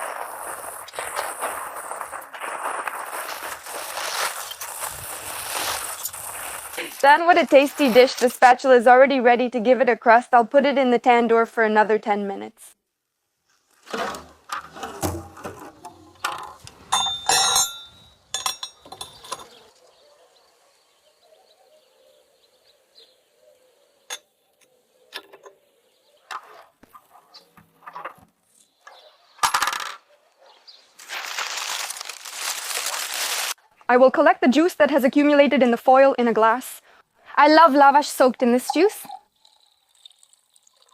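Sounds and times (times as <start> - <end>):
rustling: 0.0 - 8.4, 31.0 - 33.6
metal clattering and clinking: 15.5 - 19.6.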